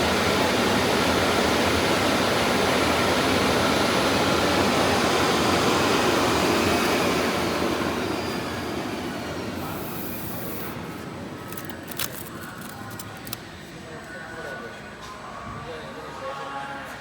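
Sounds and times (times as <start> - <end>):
cutting machine mechanical noise: 9.6 - 10.8, 11.4 - 13.4.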